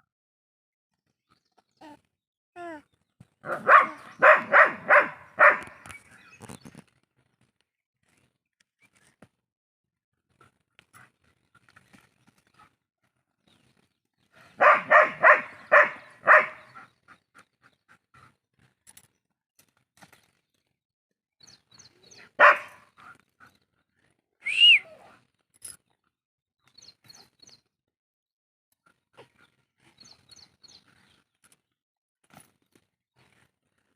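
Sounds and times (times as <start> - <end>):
dog barking: 3.5 - 5.8, 14.6 - 16.8, 22.4 - 22.9.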